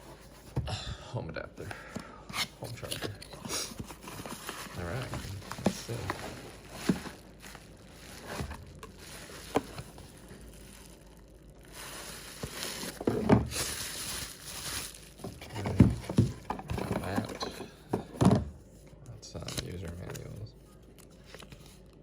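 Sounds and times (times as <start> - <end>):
packaging rustling: 2.8 - 18.1
knocks and clacks of handling: 15.2 - 18.5.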